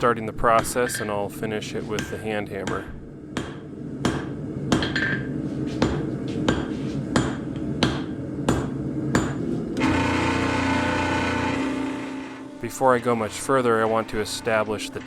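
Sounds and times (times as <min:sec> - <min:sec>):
hammer forging steel on anvil: 0:02.0 - 0:15.0
loud steady machine noise: 0:09.8 - 0:15.0.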